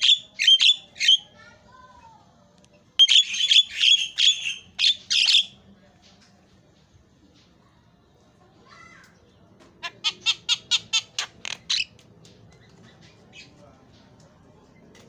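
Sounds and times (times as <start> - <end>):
bird calling harsh notes: 3.0 - 5.6.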